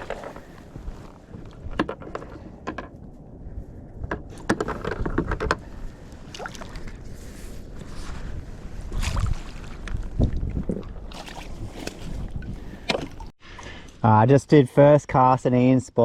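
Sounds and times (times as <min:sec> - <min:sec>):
wind and water rumble: 0:00.0 - 0:14.0.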